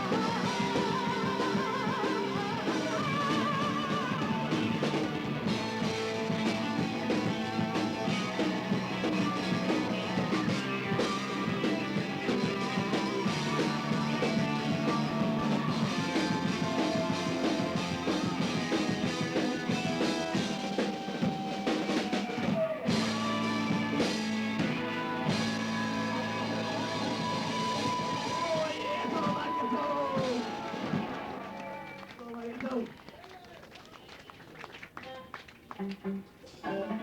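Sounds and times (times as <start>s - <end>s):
heavy metal band playing: 0.0s - 31.9s.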